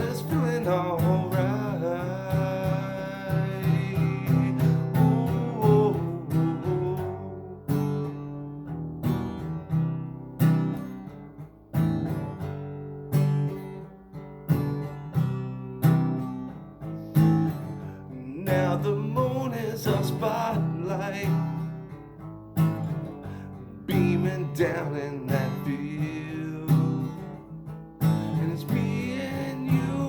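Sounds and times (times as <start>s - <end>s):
person singing: 0.0s - 7.6s, 18.1s - 21.6s, 23.7s - 27.4s, 28.2s - 30.0s
acoustic guitar strumming chords: 0.0s - 30.0s.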